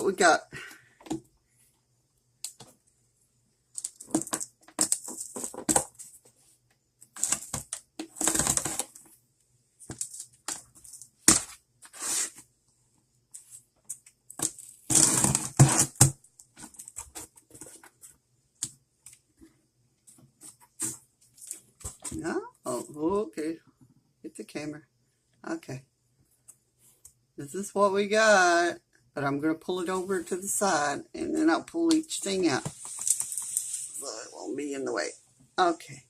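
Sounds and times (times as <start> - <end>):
box contents rustling and clicking: 3.8 - 6.2.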